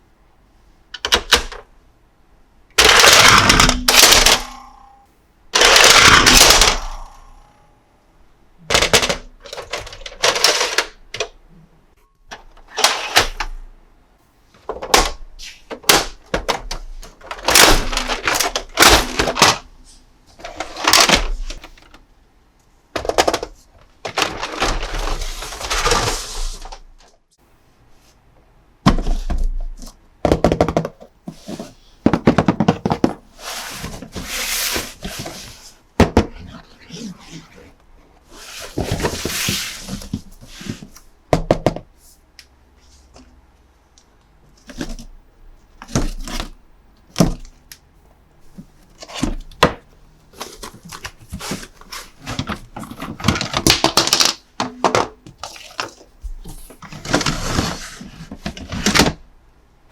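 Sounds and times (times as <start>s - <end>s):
plastic parts clicking and knocking: 0.9s - 1.7s, 2.8s - 4.7s, 5.6s - 7.3s, 8.6s - 11.4s, 14.6s - 19.8s, 20.4s - 22.0s, 22.9s - 27.2s, 28.8s - 36.4s, 48.6s - 57.4s
packaging crinkly rustling: 23.8s - 27.1s, 50.3s - 54.8s.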